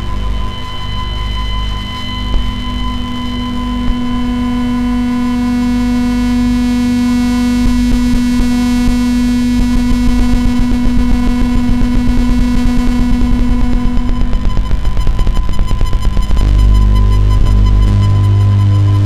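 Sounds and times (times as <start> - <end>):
electric buzz with low hum: 0.0 - 19.0.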